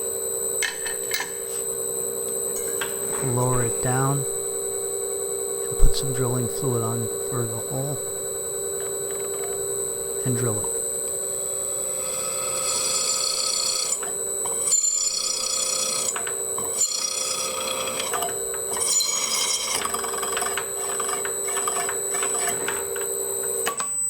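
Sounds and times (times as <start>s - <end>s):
drill press hum: 0.0s - 24.0s
high-pitched drilling squeal: 11.9s - 22.6s.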